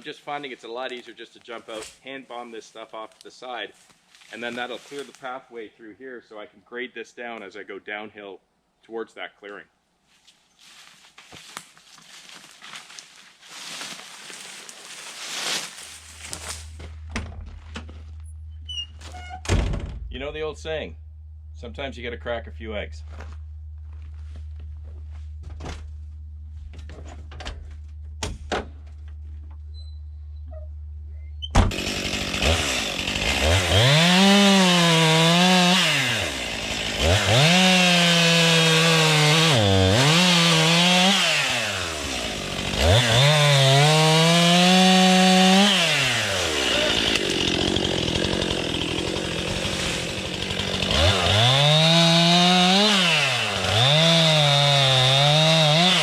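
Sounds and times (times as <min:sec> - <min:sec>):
low hum: 0:16.0 - 0:31.5
chainsaw revving: 0:31.7 - 0:56.0.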